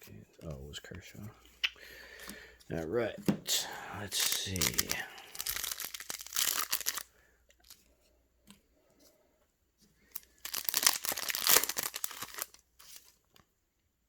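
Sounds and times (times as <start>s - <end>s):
foil wrapper tearing: 4.2s - 7.1s, 10.2s - 13.1s.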